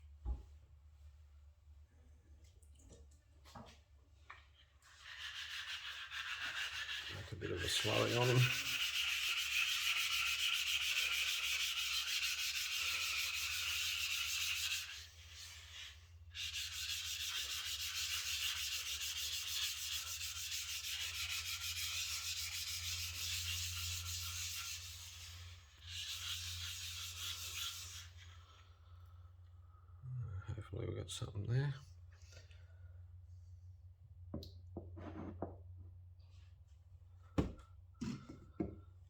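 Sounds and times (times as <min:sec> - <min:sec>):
wet scraping on whetstone: 0:04.8 - 0:28.5.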